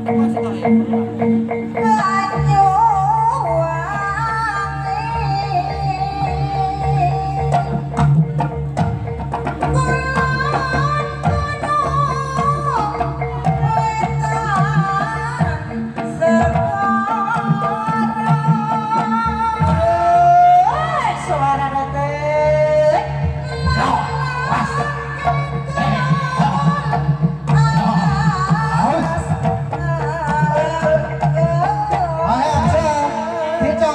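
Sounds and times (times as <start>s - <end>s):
drums and percussion: 0.0s - 33.9s.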